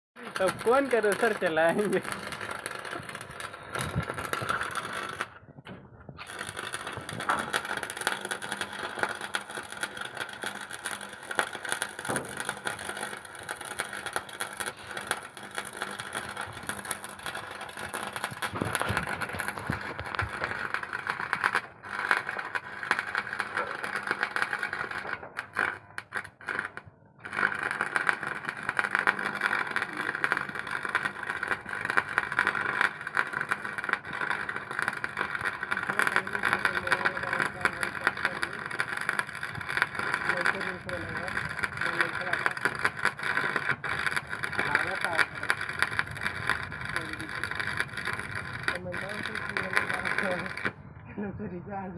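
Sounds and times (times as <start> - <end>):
welding arc crackling: 0.2 - 50.8.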